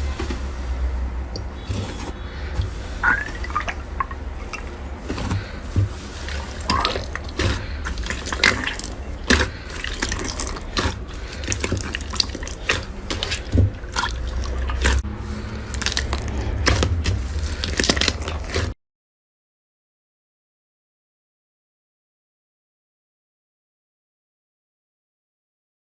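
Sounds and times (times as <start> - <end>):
slime squeezed wet sticky pops: 2.6 - 15.0.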